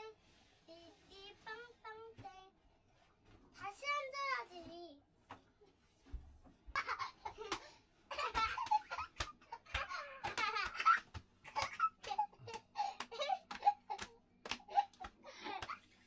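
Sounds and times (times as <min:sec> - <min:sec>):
children laughing and giggling: 0:06.7 - 0:16.0.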